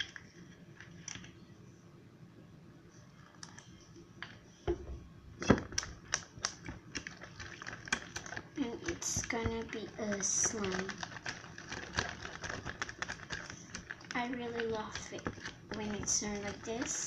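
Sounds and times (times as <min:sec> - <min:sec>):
slime stirred with a spatula: 0:05.6 - 0:17.0.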